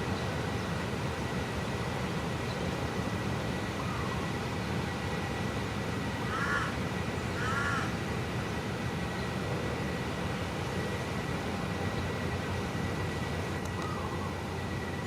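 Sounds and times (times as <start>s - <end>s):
crow cawing: 6.2s - 6.8s, 7.4s - 8.0s.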